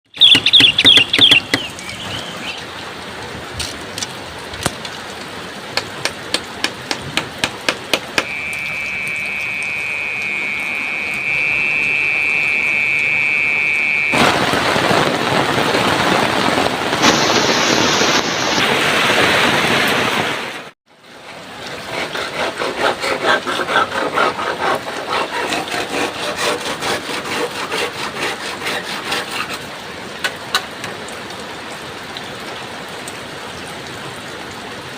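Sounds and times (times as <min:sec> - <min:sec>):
heavy rain rushing: 0:00.1 - 0:21.9
wood being struck: 0:00.3 - 0:01.7, 0:05.8 - 0:08.4
high whistling tone: 0:08.2 - 0:14.2.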